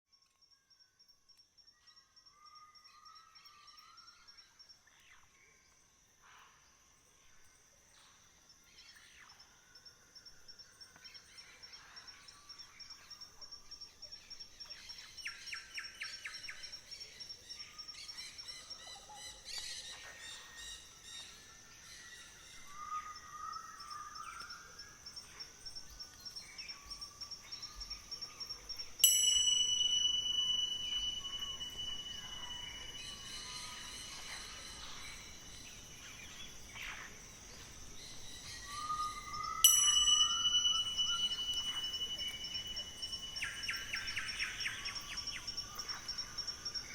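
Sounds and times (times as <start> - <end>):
birds singing and calling: 10.5 - 46.9
bright chime: 27.5 - 36.2, 38.4 - 46.9.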